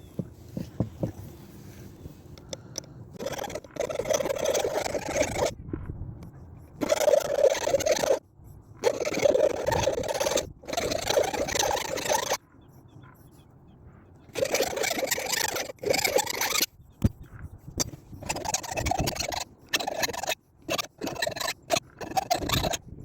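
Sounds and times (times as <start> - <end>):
tool scraping on metal hatchet: 17.7 - 22.9.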